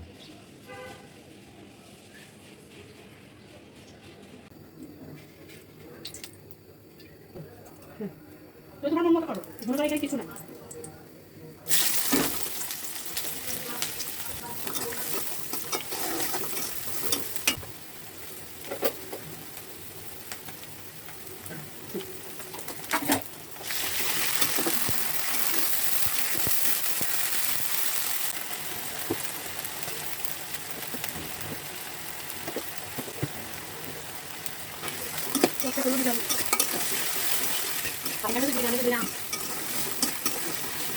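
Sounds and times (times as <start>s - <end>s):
food sizzling in hot oil: 11.7s - 40.9s.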